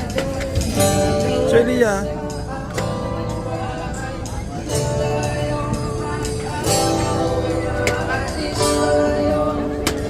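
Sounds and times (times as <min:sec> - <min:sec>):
guitar music: 0:00.0 - 0:10.0.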